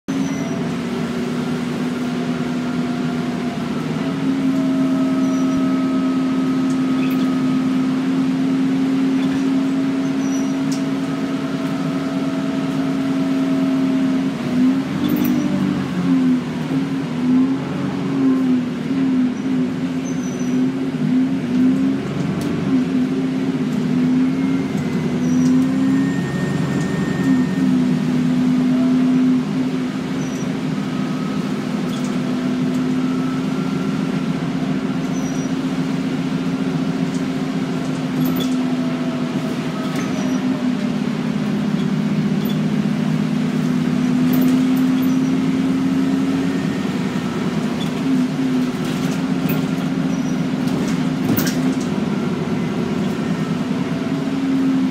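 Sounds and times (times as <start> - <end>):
bus diesel engine droning: 0.0 - 54.9
faint turbocharger whistle: 4.4 - 7.7, 24.2 - 28.0, 35.0 - 35.6.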